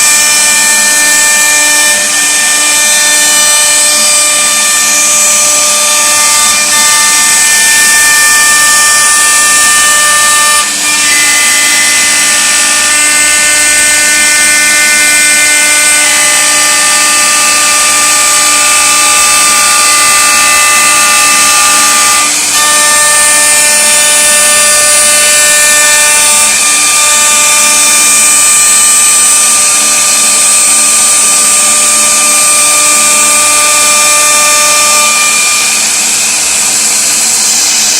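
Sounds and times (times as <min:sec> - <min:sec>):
cnc router spindle whine: 0:00.0 - 0:37.9
wood cutting hiss: 0:00.0 - 0:37.9.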